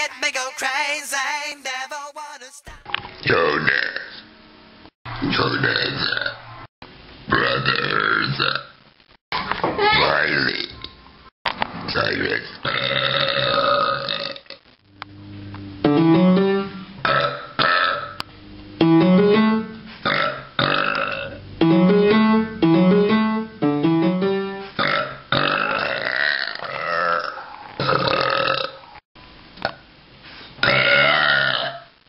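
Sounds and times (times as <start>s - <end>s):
man burping loudly: 3.4s - 4.2s, 5.5s - 6.4s, 7.3s - 8.7s, 12.6s - 14.6s, 17.0s - 18.2s, 20.0s - 21.4s, 24.8s - 28.9s, 30.6s - 31.9s
plucked string music: 21.6s - 24.6s.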